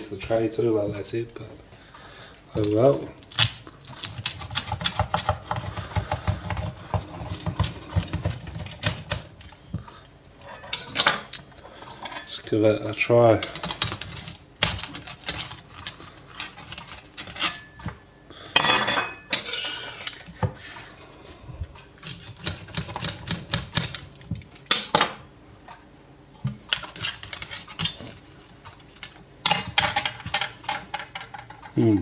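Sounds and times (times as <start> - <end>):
cutlery and dishes clinking: 10.4 - 12.4, 14.7 - 18.0, 18.6 - 20.4, 29.4 - 31.8.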